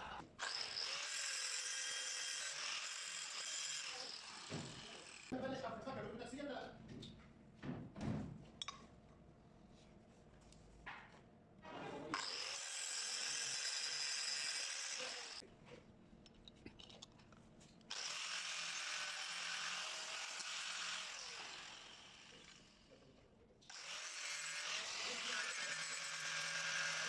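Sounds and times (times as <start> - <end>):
power tool rasping steel: 0.4 - 5.3, 12.2 - 15.4, 17.9 - 22.9, 23.7 - 27.0.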